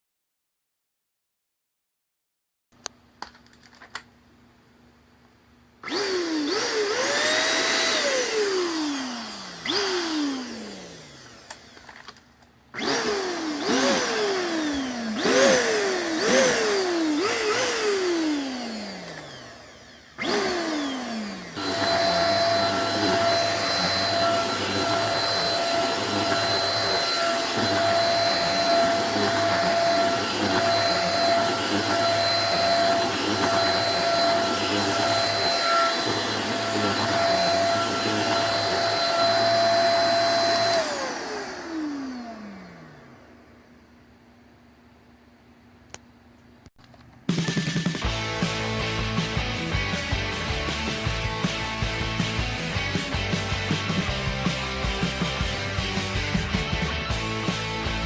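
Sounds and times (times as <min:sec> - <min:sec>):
handheld vacuum cleaner motor: 0:05.8 - 0:43.6.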